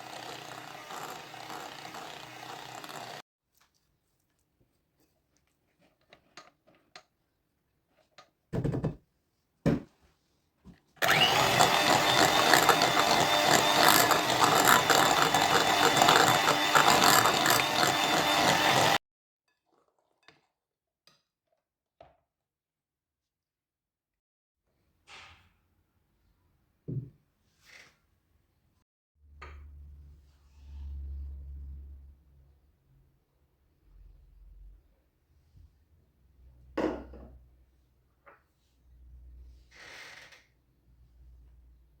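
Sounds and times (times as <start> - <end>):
kitchen appliance motor running: 0.0 - 3.2, 11.0 - 19.0.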